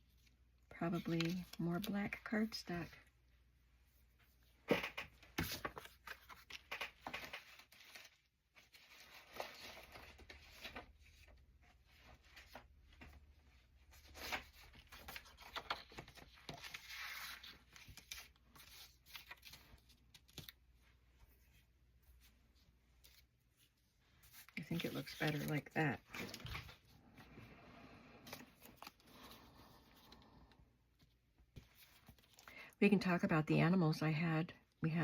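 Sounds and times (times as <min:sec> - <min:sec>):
paper rustling and scraping: 0:04.8 - 0:13.2, 0:13.8 - 0:20.6, 0:23.0 - 0:27.4.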